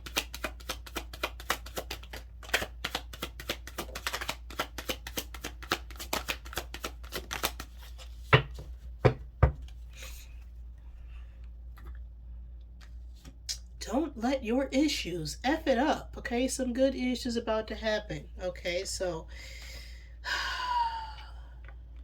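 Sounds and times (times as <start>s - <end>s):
cards being shuffled: 0.0s - 8.9s.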